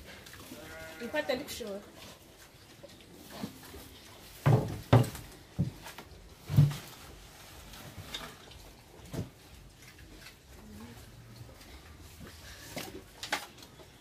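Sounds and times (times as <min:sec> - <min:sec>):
dull knocks and thuds: 0:04.4 - 0:05.9.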